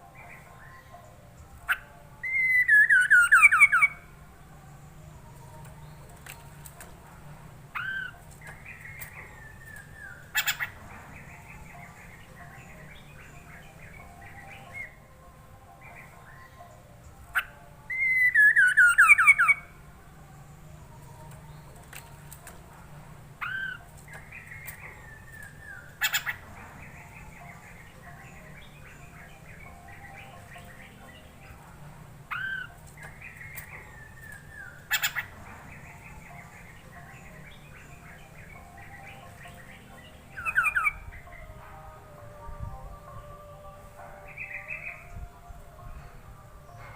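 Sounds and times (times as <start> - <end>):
soft bird chatter: 0.0 - 42.1, 42.8 - 46.9
bird whistling song: 0.1 - 4.1, 7.7 - 15.0, 15.8 - 19.7, 23.4 - 31.6, 32.3 - 41.5, 44.2 - 45.2.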